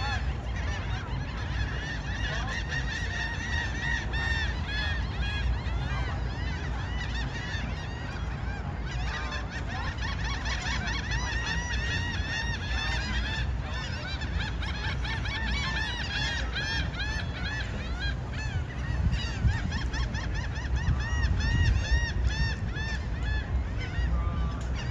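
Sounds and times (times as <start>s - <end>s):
flock of birds calling: 0.0s - 24.9s.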